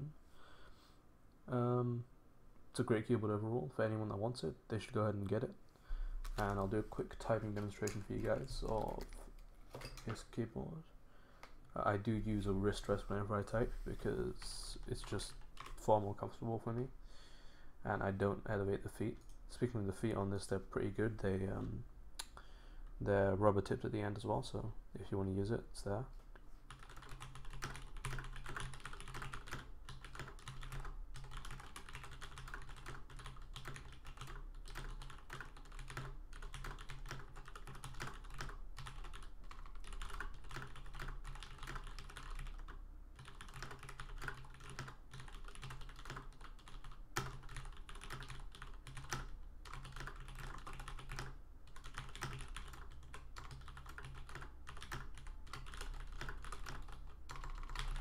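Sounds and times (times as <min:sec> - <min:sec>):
fast typing on mechanical keyboard: 0:06.2 - 0:09.2, 0:15.0 - 0:15.8, 0:26.7 - 0:58.0.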